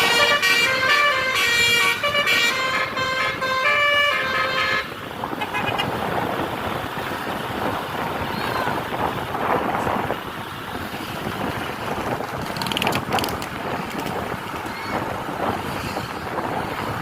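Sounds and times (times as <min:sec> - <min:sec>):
bus engine and road noise: 0:00.0 - 0:17.0
wind buffeting microphone: 0:04.8 - 0:17.0.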